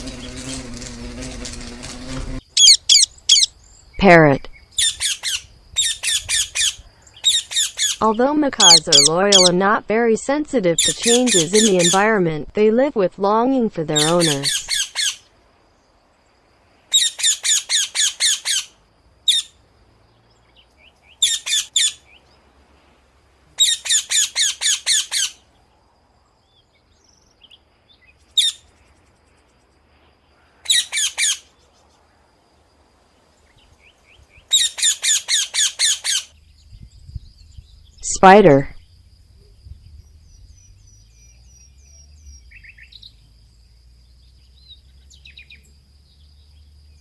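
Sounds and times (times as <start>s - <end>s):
macaw squawking: 2.6s - 3.5s, 4.8s - 9.6s, 10.8s - 12.2s, 13.9s - 15.2s, 30.7s - 31.4s.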